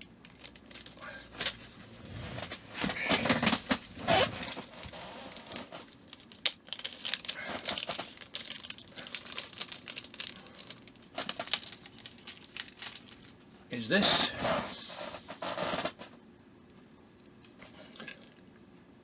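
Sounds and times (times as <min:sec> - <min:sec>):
plastic packaging crinkling: 0:00.0 - 0:13.4.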